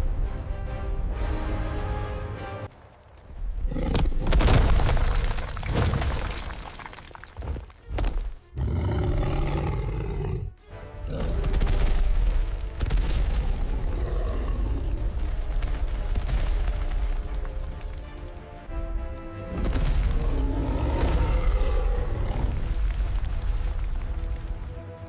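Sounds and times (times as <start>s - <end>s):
dramatic soundtrack music: 0.0s - 4.4s, 7.8s - 25.0s
creature roars: 8.6s - 10.5s, 13.3s - 15.2s, 20.1s - 22.8s.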